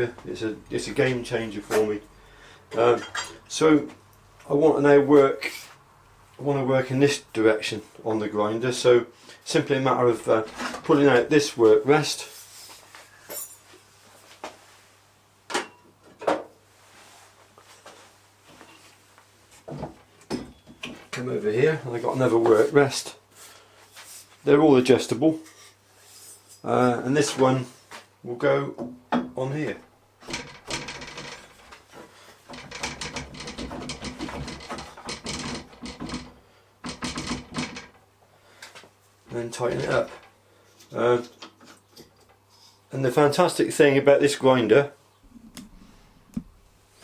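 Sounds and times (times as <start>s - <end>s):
grinder work rest knocks: 30.2s - 38.0s.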